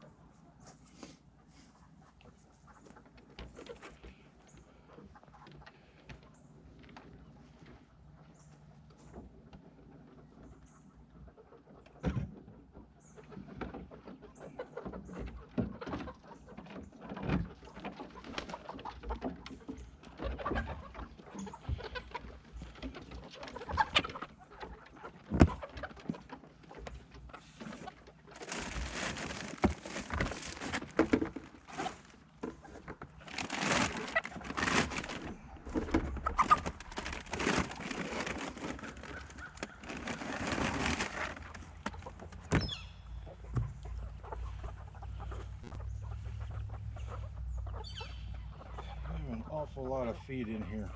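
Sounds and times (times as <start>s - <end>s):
hens clucking: 0.0s - 50.9s
rustling: 17.7s - 48.0s.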